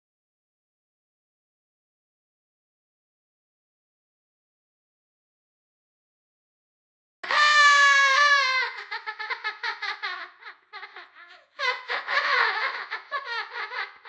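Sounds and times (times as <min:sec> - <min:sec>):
young child laughing: 0:07.3 - 0:14.0.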